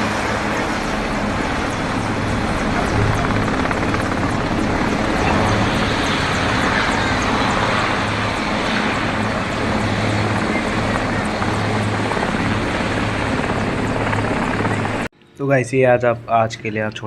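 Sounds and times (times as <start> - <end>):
helicopter rotor and turbine drone: 0.0 - 15.1.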